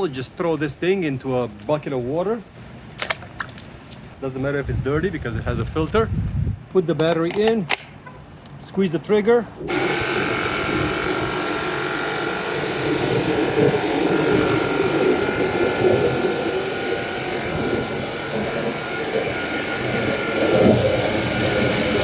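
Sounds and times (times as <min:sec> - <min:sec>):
pump motor whining: 0:09.7 - 0:22.0
water jet hissing: 0:09.7 - 0:22.0.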